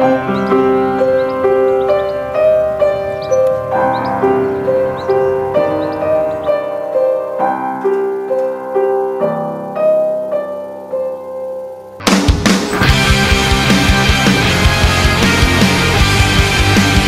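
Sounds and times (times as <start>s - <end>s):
slow solo piano melody: 0.0s - 12.1s
loud rock music: 12.0s - 17.0s.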